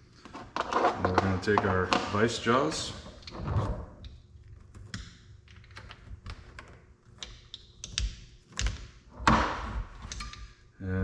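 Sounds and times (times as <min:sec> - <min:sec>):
vise jaws clicking and tapping: 0:04.1 - 0:08.9.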